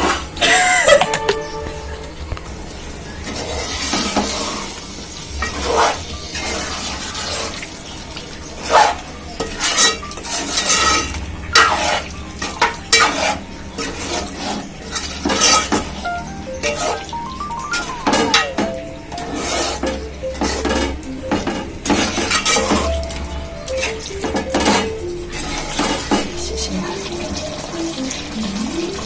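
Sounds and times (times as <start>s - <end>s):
steady sizzle: 0.0s - 29.0s
spoon clanking and scraping pan: 8.6s - 16.0s, 16.6s - 17.1s, 17.8s - 27.4s.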